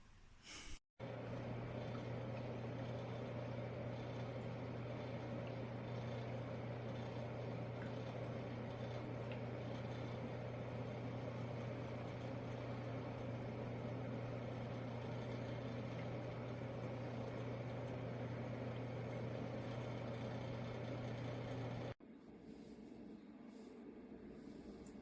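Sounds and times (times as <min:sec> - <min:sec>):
even hiss: 0:00.0 - 0:00.8
low mechanical hum: 0:00.0 - 0:25.0.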